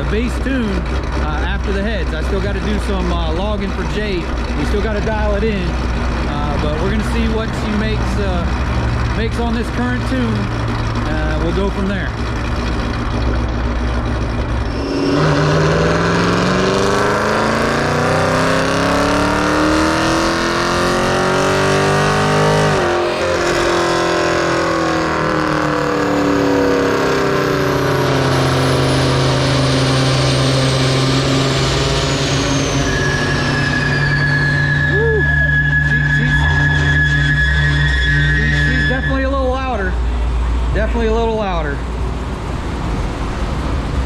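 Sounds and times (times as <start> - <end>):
engine revving and idling: 0.0 - 44.0
high whistle: 14.6 - 16.8, 32.2 - 39.4.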